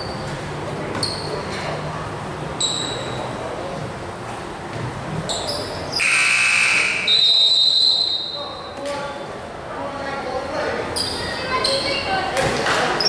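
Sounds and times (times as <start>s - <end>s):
sneakers squeaking on court: 0.0s - 1.6s, 5.2s - 6.1s
scoreboard buzzer: 6.0s - 7.1s.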